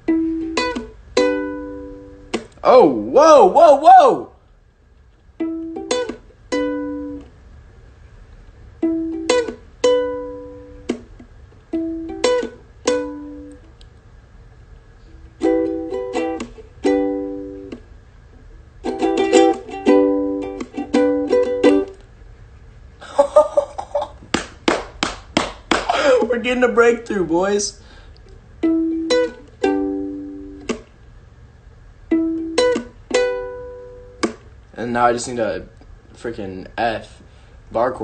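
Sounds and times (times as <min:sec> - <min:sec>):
ukulele strumming chords: 0:00.0 - 0:04.3, 0:05.4 - 0:07.4, 0:08.8 - 0:13.6, 0:15.1 - 0:17.9, 0:18.8 - 0:22.0, 0:28.6 - 0:30.9, 0:32.1 - 0:34.6.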